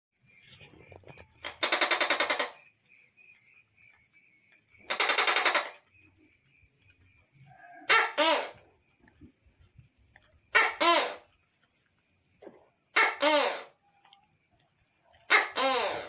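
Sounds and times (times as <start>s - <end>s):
gecko calling: 0.4s - 2.8s, 4.7s - 6.3s, 7.4s - 9.8s, 10.4s - 11.7s, 12.4s - 16.0s.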